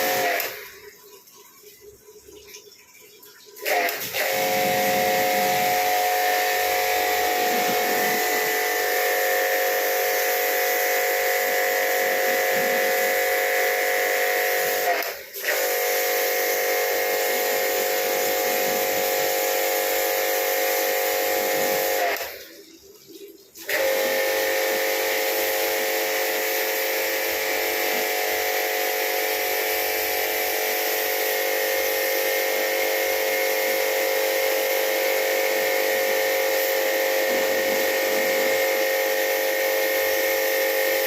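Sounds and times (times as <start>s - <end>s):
pressure washer motor hum: 0.0s - 0.9s, 3.6s - 22.5s, 23.6s - 41.0s
water spray hissing: 3.6s - 15.1s, 29.6s - 41.0s.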